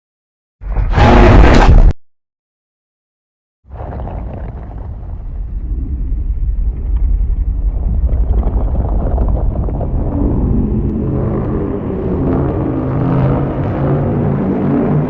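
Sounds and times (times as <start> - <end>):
deep monster rumble: 3.7 - 15.0
low droning hum: 4.8 - 15.0.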